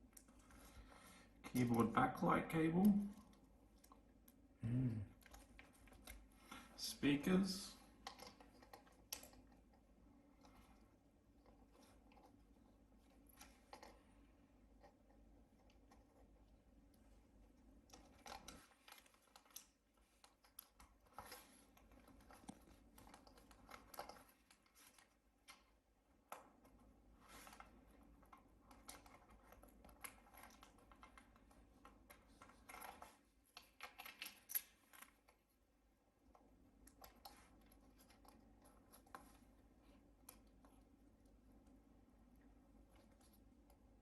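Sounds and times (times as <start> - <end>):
small laptop parts clicking: 17.8 - 26.8.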